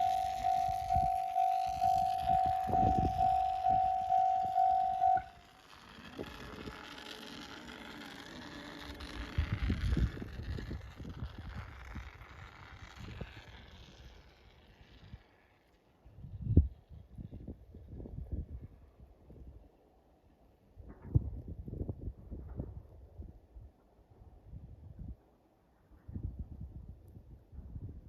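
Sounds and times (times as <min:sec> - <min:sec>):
level crossing alarm dinging: 0:00.0 - 0:05.4.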